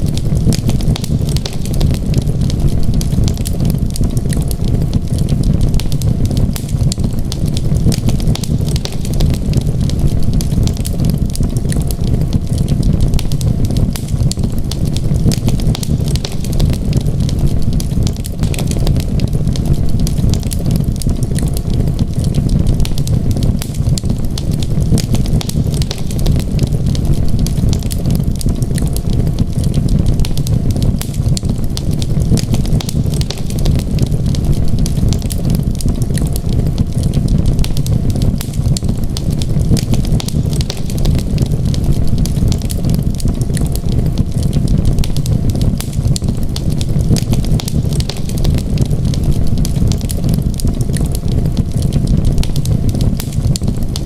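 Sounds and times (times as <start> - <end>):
low rumble: 0.0 - 54.0
wood fire crackling: 0.0 - 54.0.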